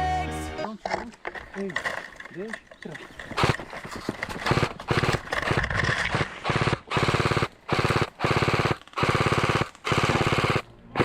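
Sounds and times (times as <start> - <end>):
automatic gunfire bursts: 3.3 - 3.7, 4.4 - 11.0.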